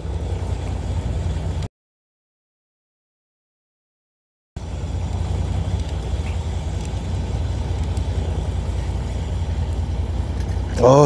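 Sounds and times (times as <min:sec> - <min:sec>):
boat engine droning: 0:00.0 - 0:01.7, 0:04.6 - 0:11.0.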